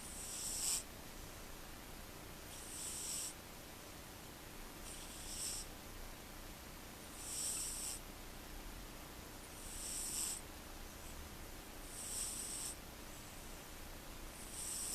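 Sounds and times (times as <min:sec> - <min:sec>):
cat snoring: 0:00.0 - 0:00.9, 0:02.5 - 0:03.4, 0:04.8 - 0:05.7, 0:07.1 - 0:08.0, 0:09.5 - 0:10.4, 0:11.8 - 0:13.4, 0:14.3 - 0:14.9.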